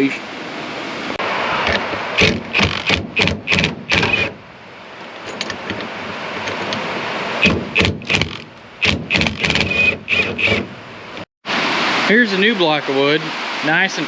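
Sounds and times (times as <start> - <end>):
rain hiss: 0.0 - 5.2, 10.8 - 14.0.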